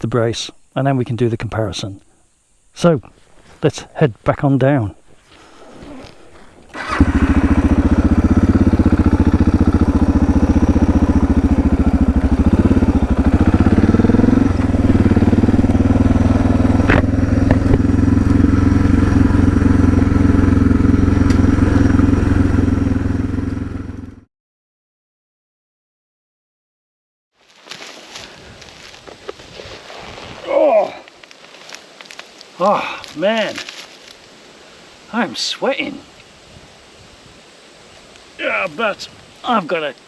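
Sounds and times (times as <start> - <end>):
motorcycle engine running: 6.3 - 24.3.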